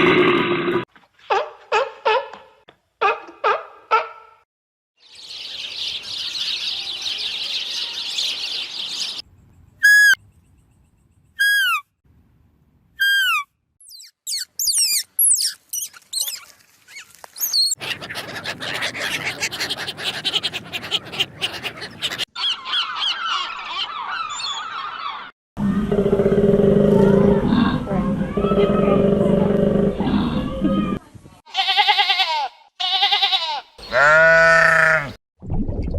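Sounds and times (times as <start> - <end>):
falling whistled calls: 9.8 - 10.2, 11.4 - 11.8
rapid chirps: 13.0 - 16.3
bird-like chattering calls: 17.4 - 24.6.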